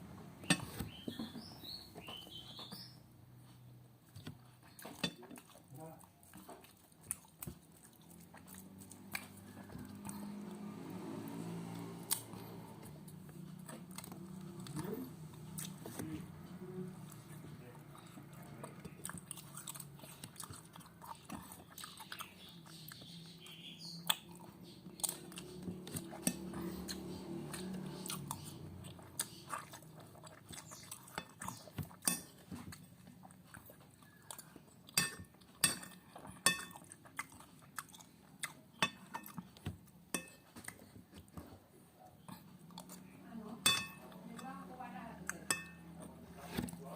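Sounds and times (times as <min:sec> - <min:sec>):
chewing and biting food: 0:04.0 - 0:44.5
spoon tapping on a plate: 0:43.7 - 0:44.0, 0:45.5 - 0:45.8.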